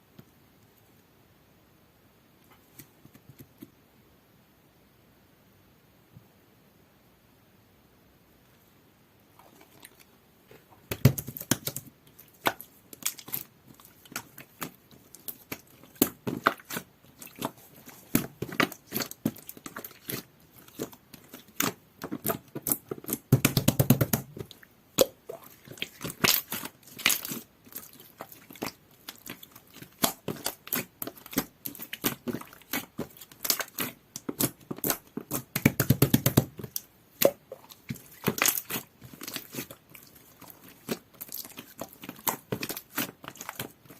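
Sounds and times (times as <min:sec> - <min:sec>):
hands squishing slime: 0:09.4 - 0:43.9.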